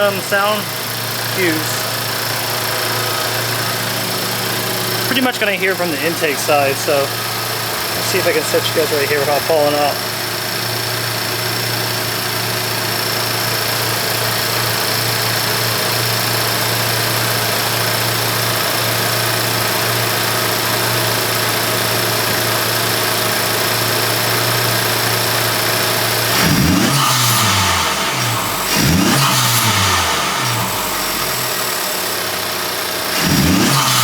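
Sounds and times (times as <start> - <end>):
car engine idling: 0.0 - 34.0
engine revving: 0.0 - 34.0.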